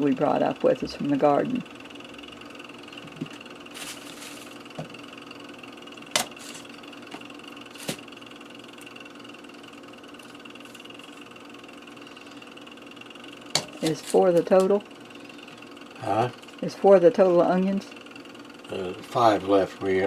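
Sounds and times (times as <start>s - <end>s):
steady hum: 0.0s - 20.0s
papery rustle: 3.7s - 4.7s.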